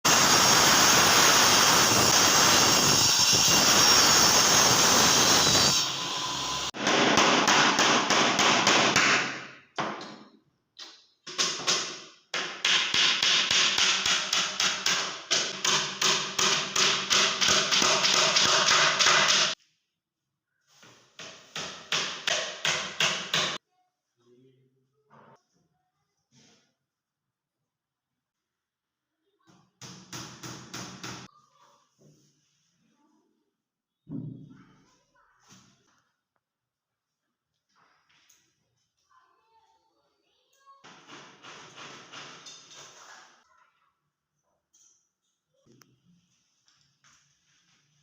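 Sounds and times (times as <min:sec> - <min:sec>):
hammering on wood: 0:06.8 - 0:10.0, 0:11.3 - 0:19.6, 0:21.2 - 0:23.6.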